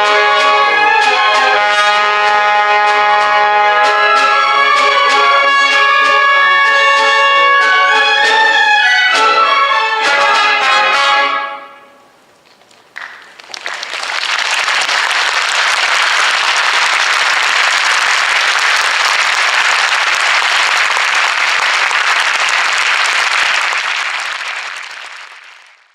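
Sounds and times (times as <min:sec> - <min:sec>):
audience applauding: 0:12.6 - 0:25.9.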